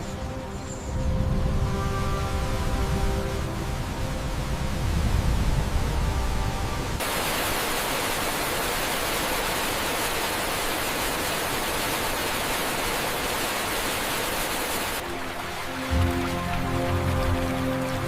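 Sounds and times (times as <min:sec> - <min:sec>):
background music: 0:00.0 - 0:07.0, 0:15.0 - 0:18.0
steady rushing hiss: 0:00.0 - 0:18.0.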